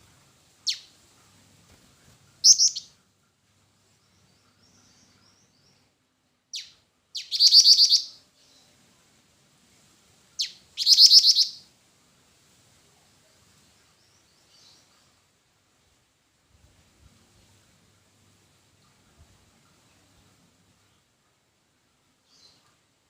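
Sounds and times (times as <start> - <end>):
bird high trill: 2.4 - 2.9, 6.6 - 8.2, 10.4 - 11.6.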